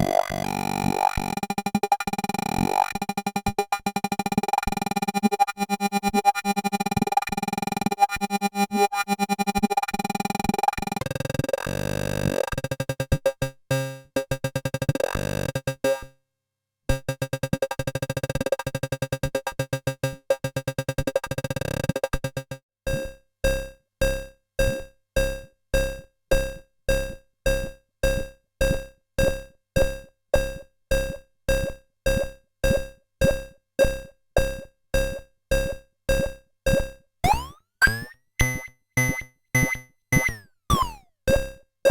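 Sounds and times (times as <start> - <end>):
analogue synthesizer notes: 37.2 - 41.0.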